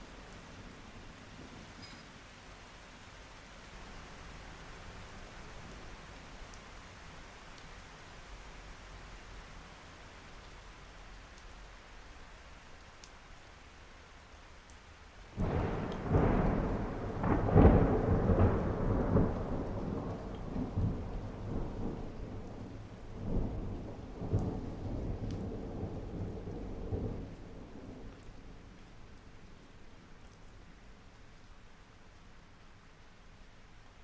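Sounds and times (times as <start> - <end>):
soft steady rain: 0.0 - 34.0
thunder rolling: 15.4 - 27.4.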